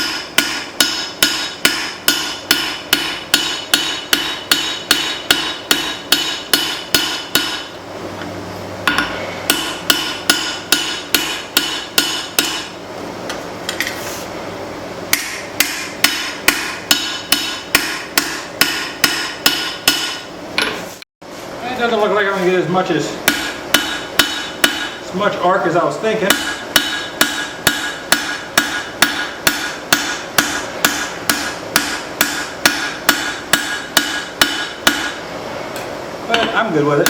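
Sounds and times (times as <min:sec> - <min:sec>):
steel and anvil ringing: 0:00.0 - 0:07.7, 0:08.9 - 0:12.7, 0:23.3 - 0:25.0
hammer striking steel on anvil: 0:00.0 - 0:07.8, 0:08.8 - 0:12.7, 0:15.1 - 0:20.8, 0:23.2 - 0:25.0, 0:26.3 - 0:35.2.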